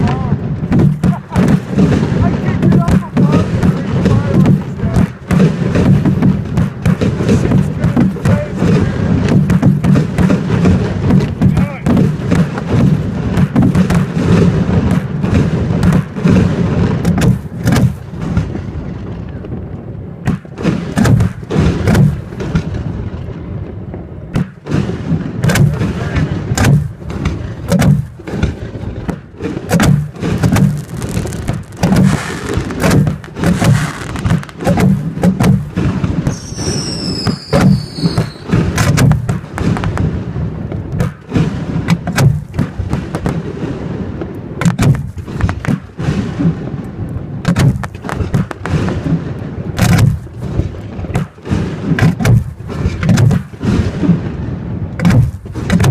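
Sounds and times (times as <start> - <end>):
fireworks booms and bangs: 0.0 - 55.9
firework whistles: 36.2 - 38.8.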